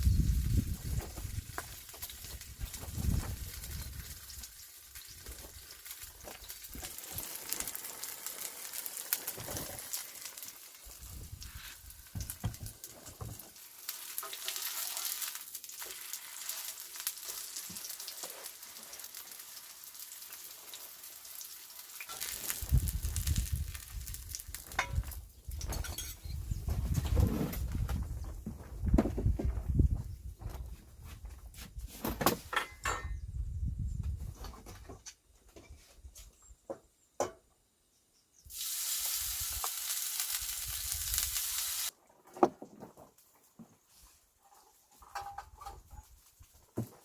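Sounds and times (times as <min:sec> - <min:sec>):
pancake sizzling in oil: 0:00.4 - 0:25.1, 0:38.4 - 0:42.0.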